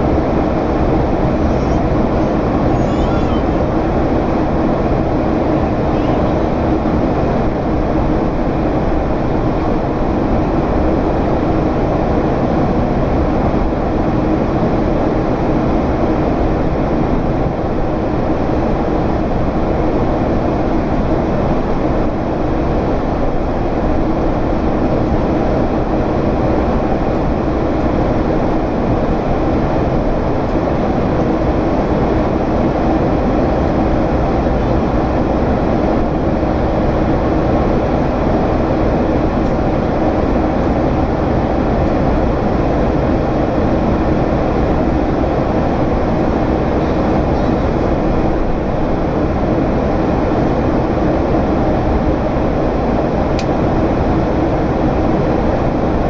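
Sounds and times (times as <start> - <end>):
airflow noise: 0.0 - 9.3, 31.0 - 51.1
jet engine deep rumble: 0.0 - 56.0
faint steady hum: 26.6 - 56.0.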